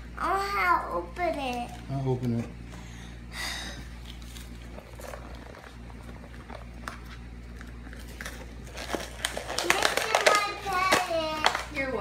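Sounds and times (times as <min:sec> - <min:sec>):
steady low hum: 0:00.0 - 0:12.0
packaging rustling: 0:04.0 - 0:12.0.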